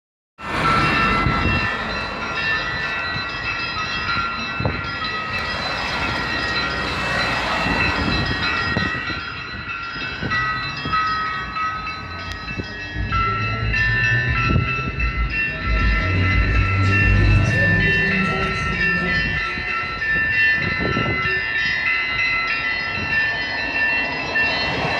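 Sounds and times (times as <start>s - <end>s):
church bells pealing: 0.4s - 24.9s
low steady tone: 12.2s - 20.0s.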